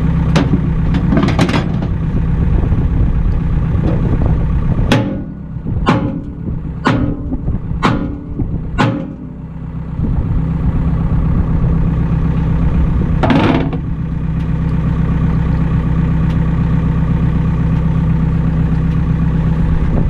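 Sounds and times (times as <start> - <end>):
engine idling: 0.0 - 20.0
sharp ringing knocks: 4.9 - 9.5.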